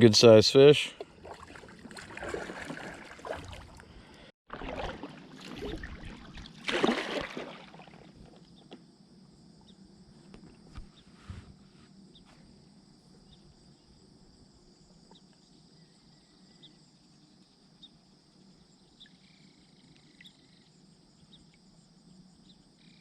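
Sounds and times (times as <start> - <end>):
insects trilling: 7.5 - 23.0.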